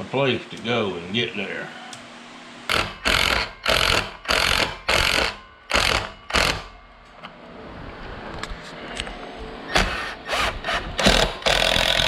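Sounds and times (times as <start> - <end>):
power tool motor bursts: 2.7 - 6.7, 9.7 - 12.0.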